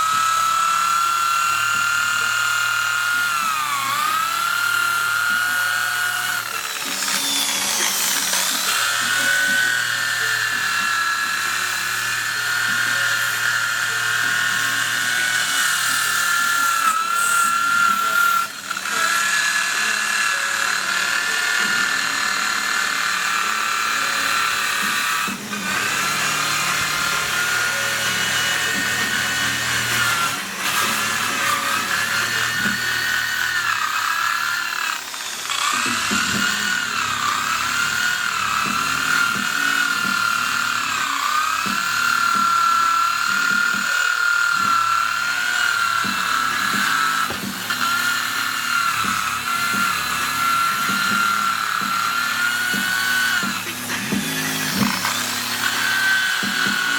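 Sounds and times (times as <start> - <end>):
power tool motor whining: 0.0 - 56.9.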